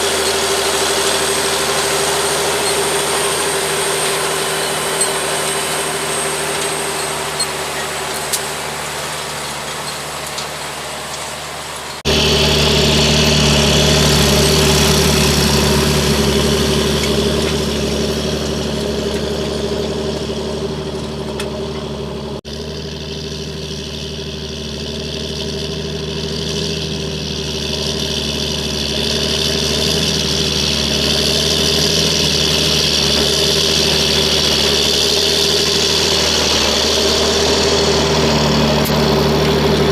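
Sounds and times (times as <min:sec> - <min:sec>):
tractor diesel engine running: 0:00.0 - 0:39.9.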